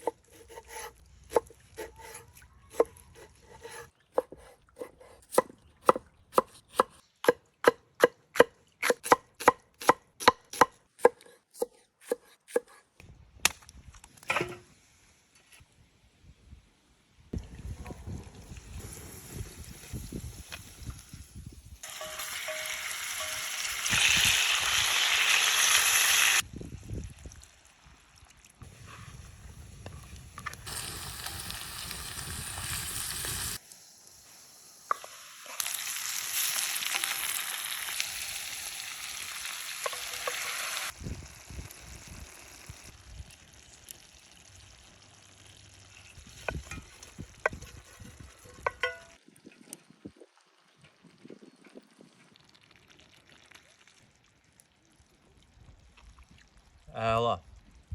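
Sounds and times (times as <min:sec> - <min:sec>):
meat frying and sizzling loudly: 0:18.4 - 0:27.3, 0:28.6 - 0:47.4.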